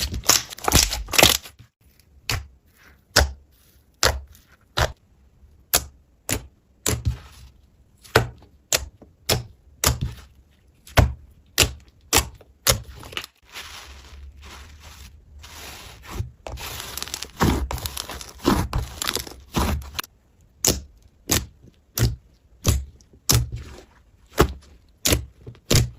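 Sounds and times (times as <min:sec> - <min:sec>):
slime cracking and crackling: 0:00.0 - 0:01.5, 0:15.6 - 0:22.0.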